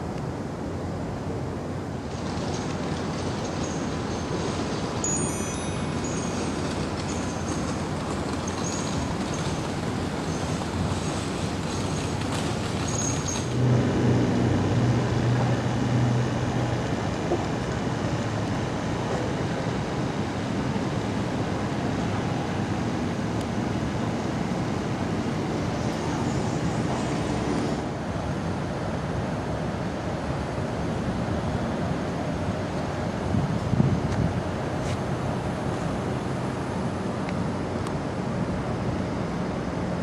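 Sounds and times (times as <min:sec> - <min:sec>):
city street traffic: 0:00.0 - 0:40.0
heavy vehicle engine hum: 0:00.0 - 0:40.0.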